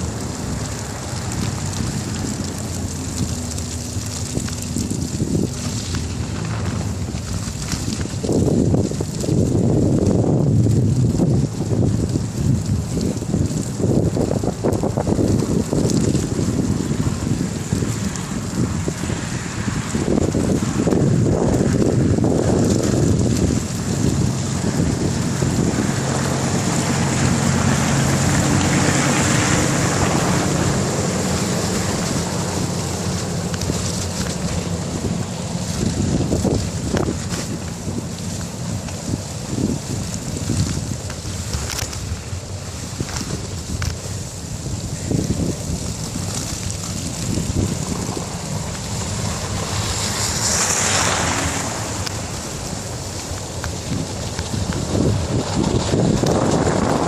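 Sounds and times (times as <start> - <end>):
engine droning: 0.0 - 57.0
wind rushing over microphone: 0.0 - 57.0.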